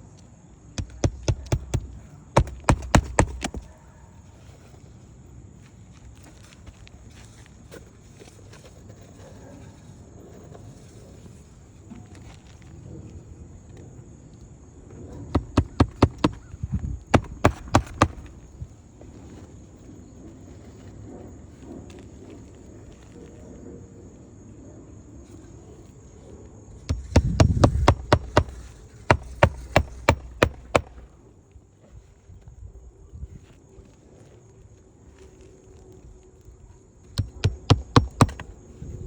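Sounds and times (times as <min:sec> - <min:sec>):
hammer nailing roof shingle: 0:00.8 - 0:03.8, 0:15.3 - 0:18.7, 0:26.8 - 0:31.2, 0:37.1 - 0:38.6.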